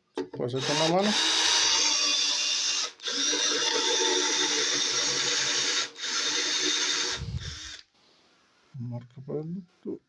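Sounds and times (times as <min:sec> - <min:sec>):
electric drill boring through wood: 0:00.6 - 0:07.8.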